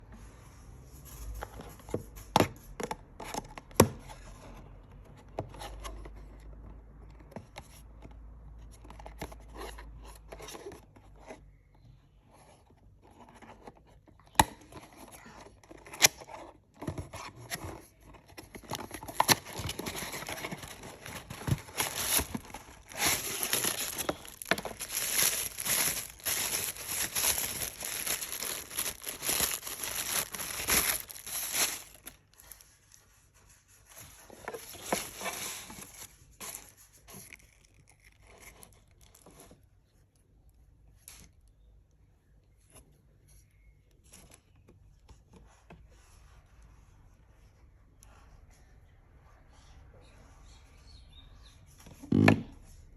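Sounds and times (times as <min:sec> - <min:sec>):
packaging snapping: 0:18.6 - 0:32.2
packaging tearing and crinkling: 0:18.7 - 0:32.6, 0:34.5 - 0:39.2.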